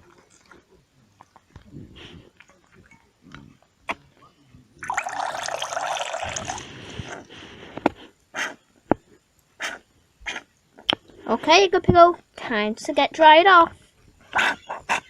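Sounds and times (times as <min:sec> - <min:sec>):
water squirting from bath toy: 0:04.8 - 0:07.2.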